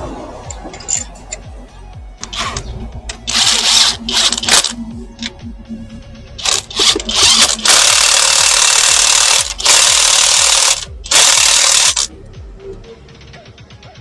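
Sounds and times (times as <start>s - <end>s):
power tool running in bursts: 6.4s - 12.1s.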